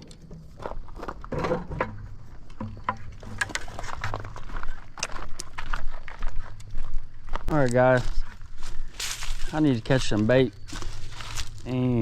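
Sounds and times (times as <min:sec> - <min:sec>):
footsteps crunching and scuffing: 0:00.1 - 0:12.0.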